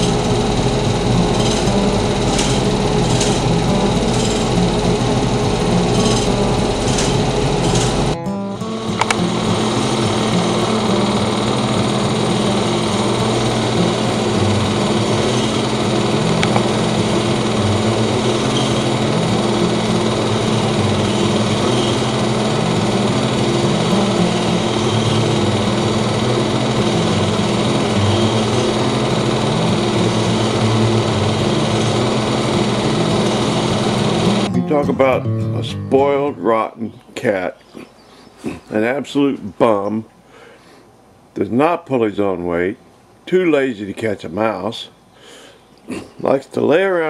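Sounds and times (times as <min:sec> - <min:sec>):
old engine idling with clatter: 0:00.0 - 0:08.2, 0:09.0 - 0:34.5.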